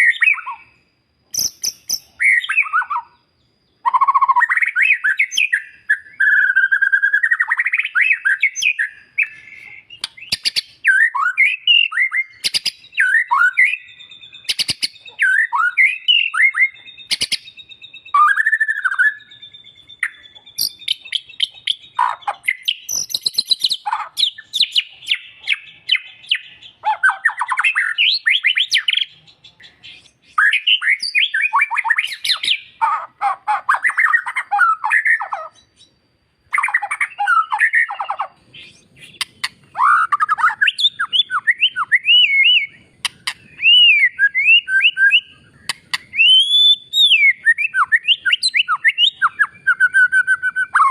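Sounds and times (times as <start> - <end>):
songbird whistles and trills: 0.0 - 50.9
bird sharp clicking notes: 9.2 - 10.7, 39.0 - 39.7, 43.0 - 43.6, 45.6 - 46.3.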